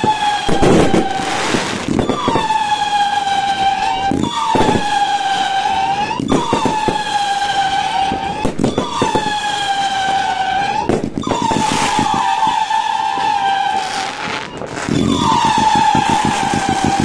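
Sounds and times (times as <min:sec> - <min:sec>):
emergency vehicle siren: 0:00.0 - 0:17.0
firework bangs and crackle: 0:00.0 - 0:17.0.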